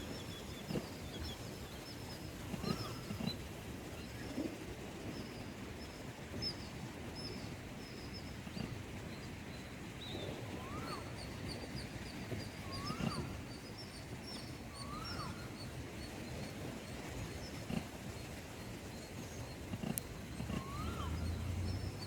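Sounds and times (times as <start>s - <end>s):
bird whistling rising and falling: 10.1s - 11.8s, 12.4s - 13.7s, 14.3s - 15.7s, 20.4s - 22.0s.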